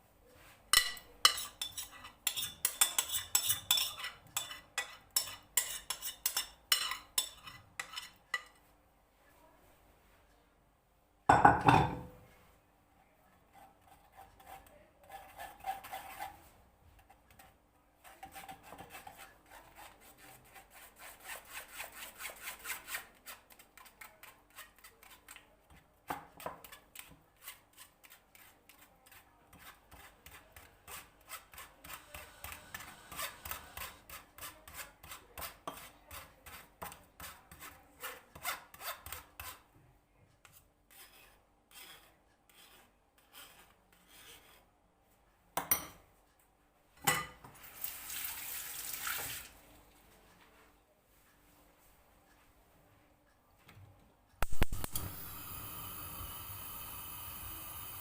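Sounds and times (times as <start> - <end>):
whisk scraping in a bowl: 0.7 - 8.6, 13.5 - 39.7, 40.5 - 44.7.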